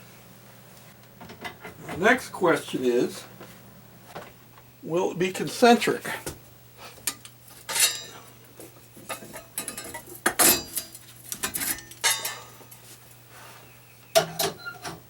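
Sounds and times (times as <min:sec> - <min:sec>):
steel parts clinking: 0:07.7 - 0:08.2.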